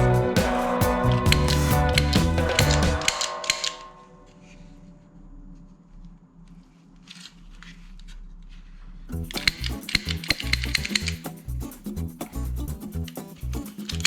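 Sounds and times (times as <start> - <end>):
background music: 0.0 - 5.1.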